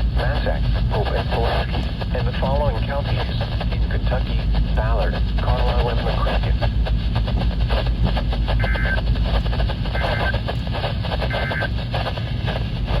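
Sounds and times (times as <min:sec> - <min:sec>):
crackling radio static: 0:00.0 - 0:13.0
low hum: 0:00.0 - 0:13.0
data tone bursts: 0:08.5 - 0:09.1, 0:09.9 - 0:10.4, 0:11.2 - 0:11.8.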